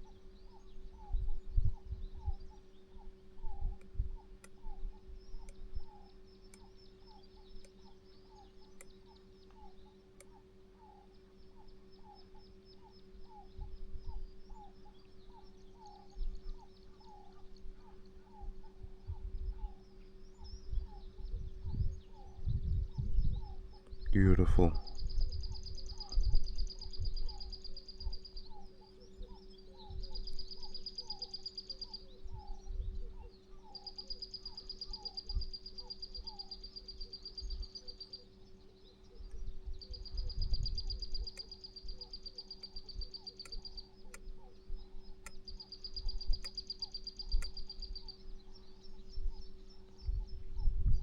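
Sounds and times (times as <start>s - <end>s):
steady low hum: 0.0s - 51.0s
wind on microphone: 1.0s - 2.5s, 18.4s - 19.7s, 20.4s - 23.6s, 24.8s - 27.3s, 39.4s - 41.3s, 50.0s - 51.0s
short bird chirping calls: 23.4s - 50.4s
high pulsing insect trill: 33.6s - 44.1s, 45.5s - 48.2s.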